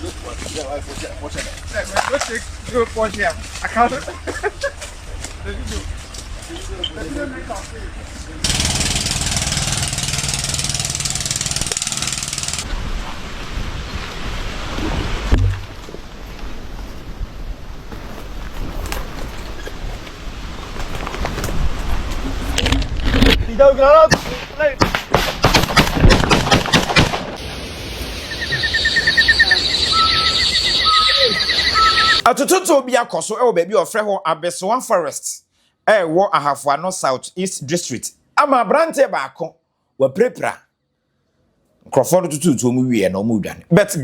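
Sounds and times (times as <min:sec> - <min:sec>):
small engine running fast: 0:08.5 - 0:12.6
sharp bangs: 0:24.1 - 0:27.5
chirping trills: 0:28.0 - 0:32.2
short whistled calls: 0:28.1 - 0:32.2.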